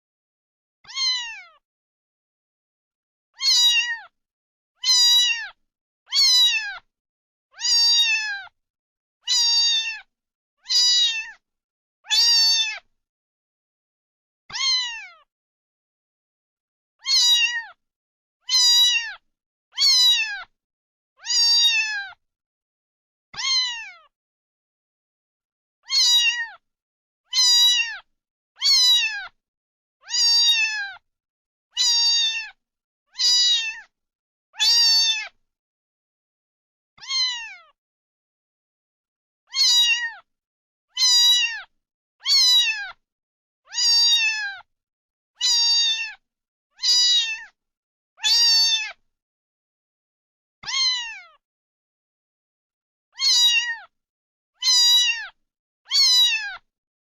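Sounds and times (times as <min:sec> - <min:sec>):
cat meowing: 0:00.8 - 0:01.6, 0:03.4 - 0:04.2, 0:04.8 - 0:06.9, 0:07.5 - 0:08.5, 0:09.2 - 0:11.4, 0:12.0 - 0:12.9, 0:14.5 - 0:15.3, 0:17.0 - 0:17.8, 0:18.4 - 0:19.2, 0:19.8 - 0:20.5, 0:21.2 - 0:22.2, 0:23.4 - 0:24.1, 0:25.8 - 0:26.6, 0:27.3 - 0:29.4, 0:30.0 - 0:31.0, 0:31.7 - 0:33.9, 0:34.6 - 0:35.4, 0:37.0 - 0:37.8, 0:39.5 - 0:40.3, 0:40.9 - 0:43.0, 0:43.7 - 0:44.7, 0:45.4 - 0:46.2, 0:46.8 - 0:47.6, 0:48.2 - 0:49.0, 0:50.6 - 0:51.4, 0:53.2 - 0:53.9, 0:54.6 - 0:56.6.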